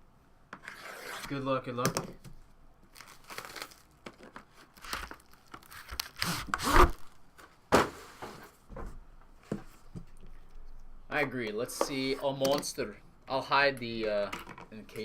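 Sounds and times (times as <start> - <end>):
plastic shrink wrap tearing: 2.9 - 7.2.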